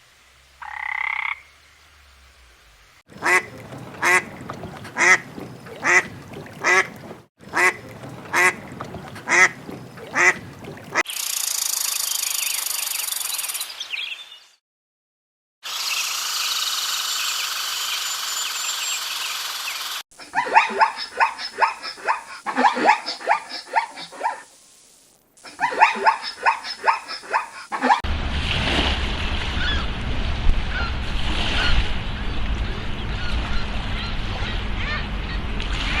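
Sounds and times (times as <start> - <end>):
steady high hiss: 0.0 - 3.0, 24.4 - 25.5
ducks quacking: 3.2 - 11.0, 20.2 - 24.3, 25.4 - 28.0
low rumble: 28.1 - 36.0.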